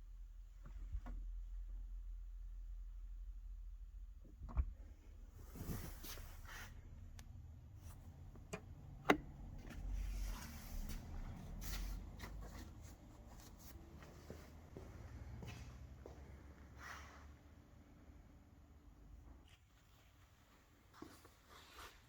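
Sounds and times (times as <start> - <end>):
car interior parts clicking: 8.3 - 9.8.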